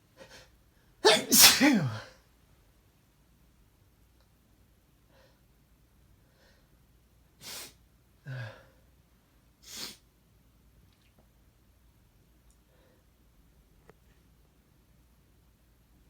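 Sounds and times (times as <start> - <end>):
person sniffing: 7.4 - 7.8, 9.6 - 10.0.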